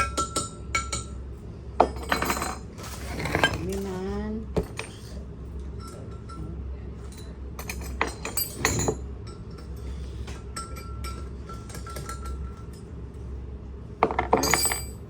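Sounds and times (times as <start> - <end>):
metal tools clinking: 14.2 - 15.0.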